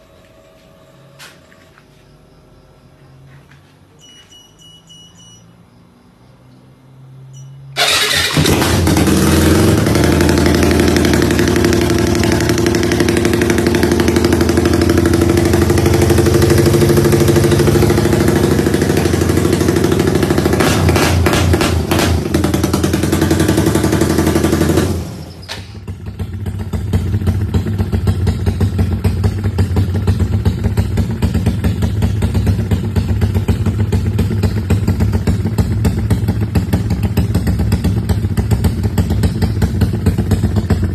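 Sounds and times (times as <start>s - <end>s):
faint beeps: 3.9s - 6.3s, 7.3s - 7.8s
motorcycle engine rumbling idle: 7.8s - 40.9s.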